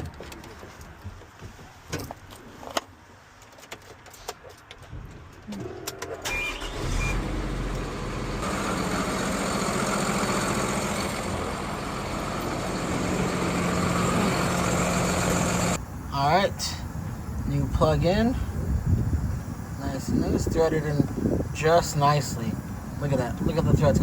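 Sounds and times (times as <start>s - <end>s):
vehicle engine starting and running: 5.5s - 24.0s.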